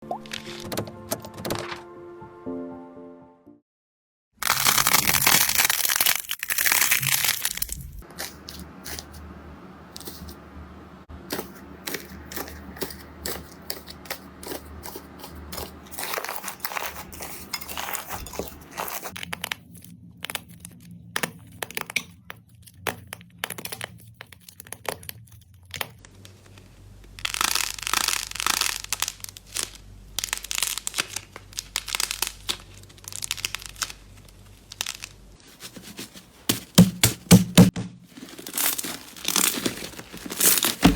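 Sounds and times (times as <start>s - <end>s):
sticky slime crackles and pops: 4.4s - 7.9s, 26.0s - 35.2s.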